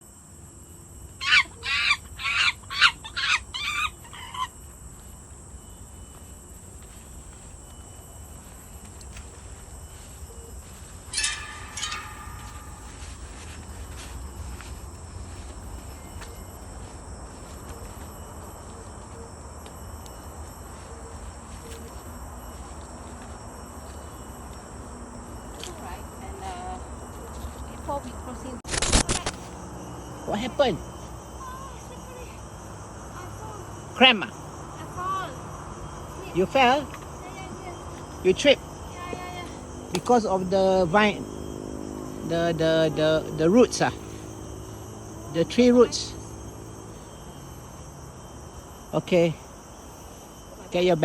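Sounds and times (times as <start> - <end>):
high-pitched insect drone: 0.0 - 51.0
bird harsh cackling call: 1.2 - 4.6, 11.1 - 13.1.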